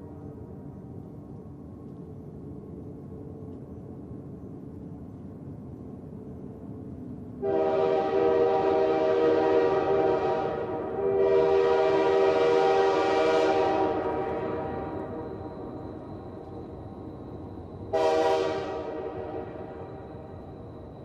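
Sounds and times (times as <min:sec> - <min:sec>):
train air horn chord: 0:07.4 - 0:15.2, 0:17.9 - 0:19.8.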